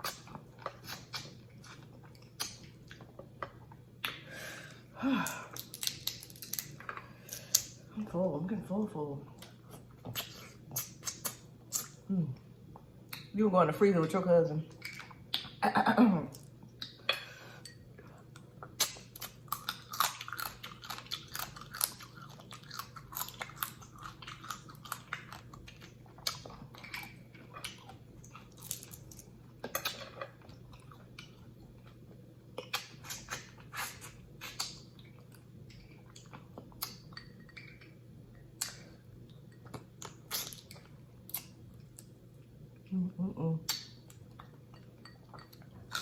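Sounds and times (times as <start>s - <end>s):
wet chewing with crunches: 0.0s - 4.2s, 18.2s - 42.2s
faint low hum: 0.0s - 46.0s.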